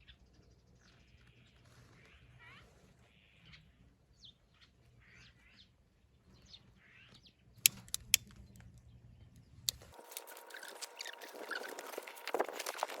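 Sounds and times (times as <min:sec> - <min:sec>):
small birds chirping: 0:00.0 - 0:13.0
sharp clicks: 0:07.6 - 0:08.8, 0:09.7 - 0:13.0.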